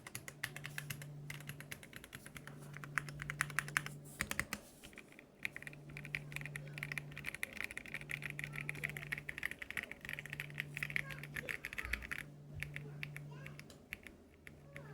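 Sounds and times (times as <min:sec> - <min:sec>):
rapid mechanical keyboard typing: 0:00.0 - 0:14.9.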